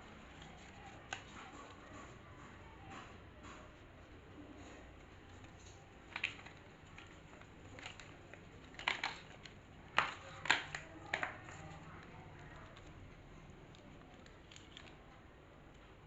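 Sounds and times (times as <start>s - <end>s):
packaging rustling and clicking: 5.1s - 13.0s, 13.6s - 15.2s.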